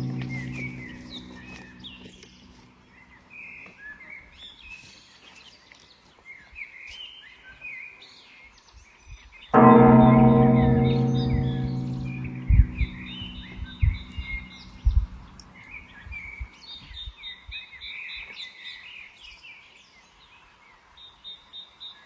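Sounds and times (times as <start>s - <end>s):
low guqin note: 0.0s - 2.4s, 9.6s - 15.6s
birds chirping: 0.0s - 6.0s, 9.5s - 17.2s.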